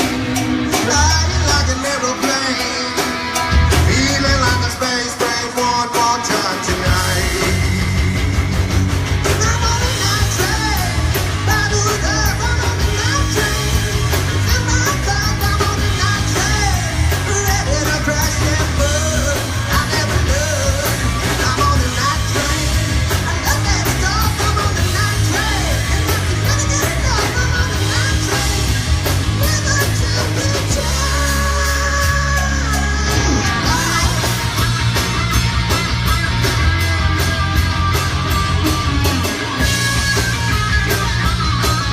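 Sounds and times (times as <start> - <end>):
heavy bass: 0.0 - 41.9
rock band playing live: 0.0 - 41.9
steady drum beat: 0.0 - 41.9
person singing and yelling: 0.7 - 7.9, 9.2 - 35.4.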